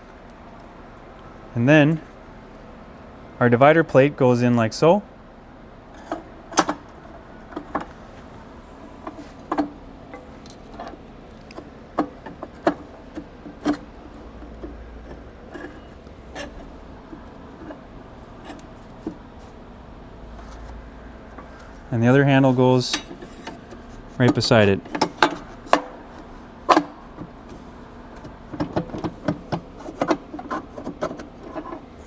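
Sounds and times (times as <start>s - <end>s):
parts clicking and knocking: 6.0s - 8.0s, 9.0s - 19.2s, 22.8s - 32.0s.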